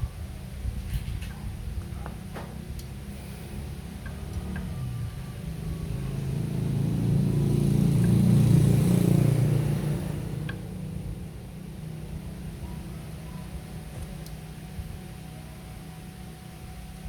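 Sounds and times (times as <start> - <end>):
vehicle engine passing by: 3.0 - 12.0.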